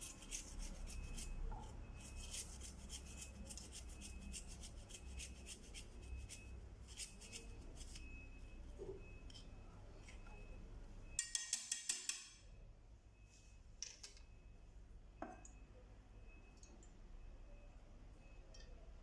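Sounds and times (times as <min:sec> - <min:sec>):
ginger scraping on a grater: 0:00.0 - 0:08.0.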